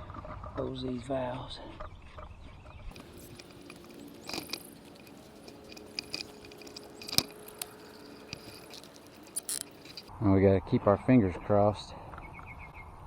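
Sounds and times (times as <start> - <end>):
light clicks and rattles: 2.9 - 10.1.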